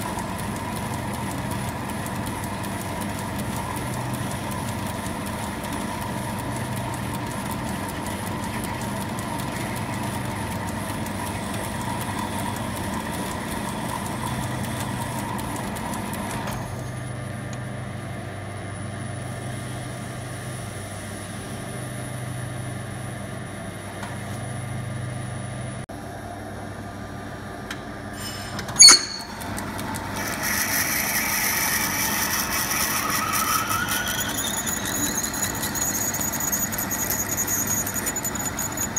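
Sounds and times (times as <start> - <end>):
metal lathe motor hum: 0.0 - 17.6, 28.7 - 38.9
lathe cutting brass: 28.2 - 38.9.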